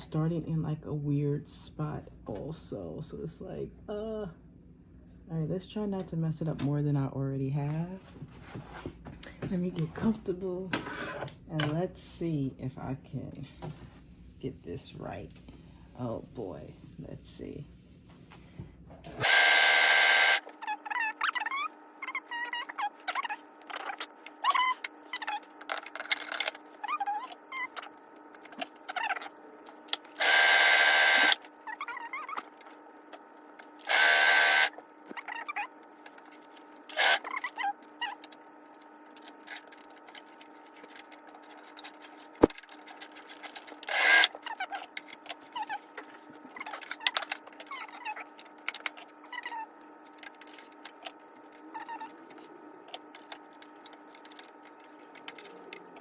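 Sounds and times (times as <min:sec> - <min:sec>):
overlock machine stitching: 0:19.1 - 0:20.4, 0:30.2 - 0:31.4, 0:33.8 - 0:34.7.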